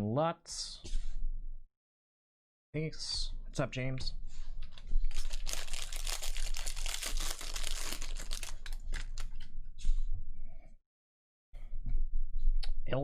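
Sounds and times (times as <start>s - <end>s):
foil wrapper crinkling and tearing: 5.1s - 9.4s.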